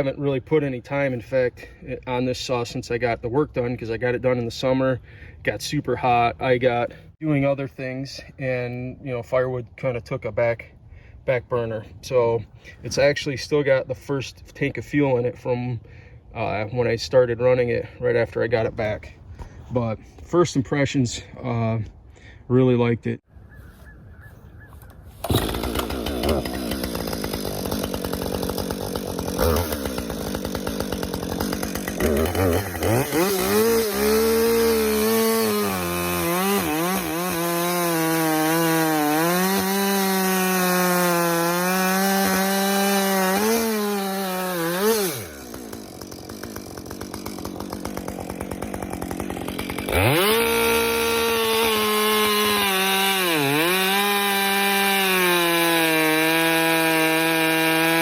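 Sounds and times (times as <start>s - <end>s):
chainsaw cutting wood: 25.2s - 58.0s.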